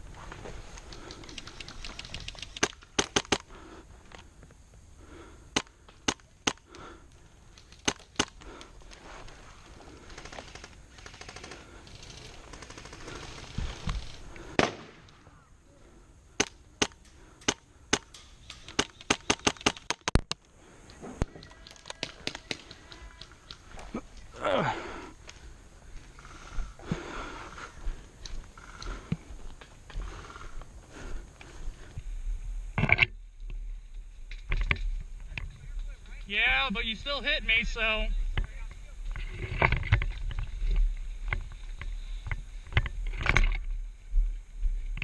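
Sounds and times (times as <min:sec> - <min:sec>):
airsoft guns firing: 0:02.6 - 0:03.5, 0:14.5 - 0:15.1, 0:16.4 - 0:20.2.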